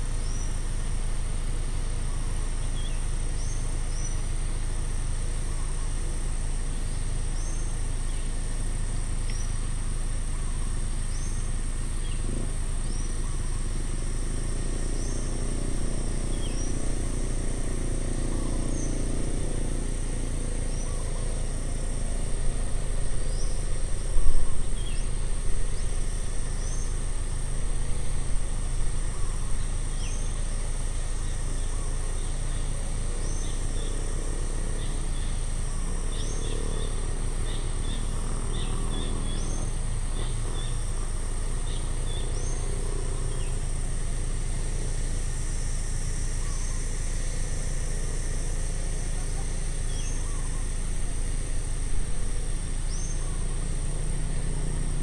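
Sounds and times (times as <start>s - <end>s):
insect drone: 0.0s - 55.0s.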